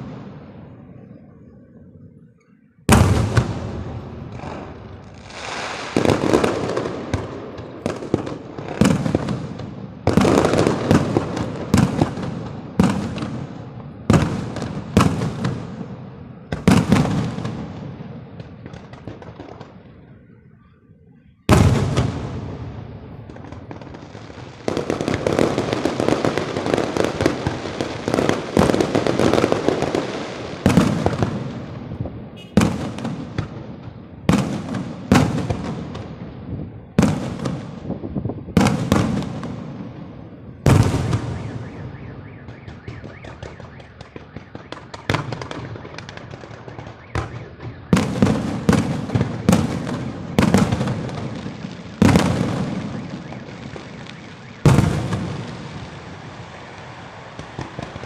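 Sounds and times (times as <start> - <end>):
fireworks bangs and crackling: 0.0 - 2.2, 2.8 - 58.0.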